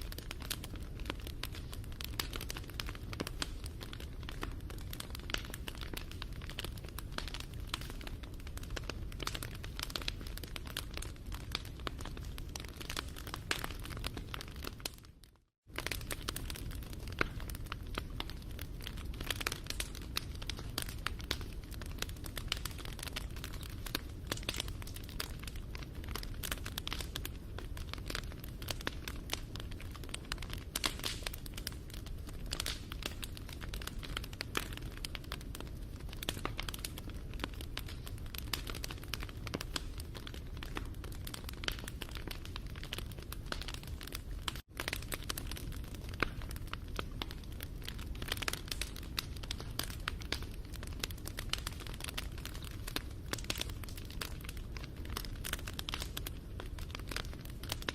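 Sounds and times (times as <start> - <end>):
wood fire crackling: 0.0 - 57.9.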